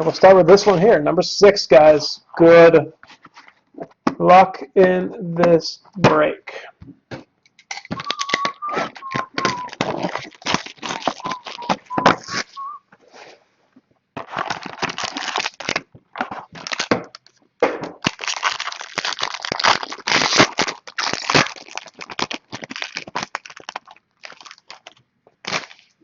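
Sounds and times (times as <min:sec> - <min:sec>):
plastic wrapping crinkling and tearing: 0:07.8 - 0:12.6, 0:14.2 - 0:17.4, 0:18.0 - 0:26.0.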